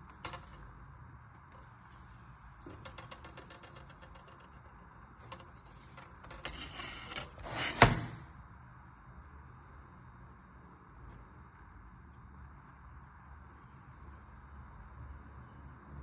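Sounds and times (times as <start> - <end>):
plastic rustling scrape: 5.6 - 8.0.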